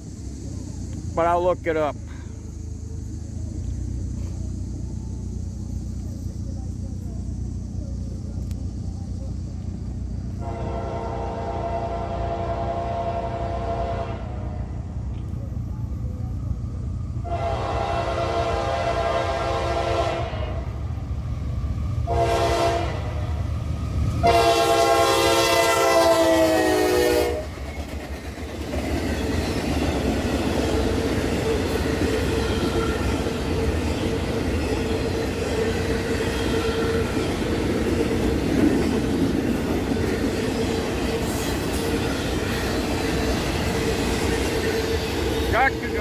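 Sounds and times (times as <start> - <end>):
train rumble and clatter: 0.0 - 46.0
locomotive air horn blasts: 10.4 - 14.6, 17.2 - 20.7, 22.0 - 23.3, 24.2 - 27.6.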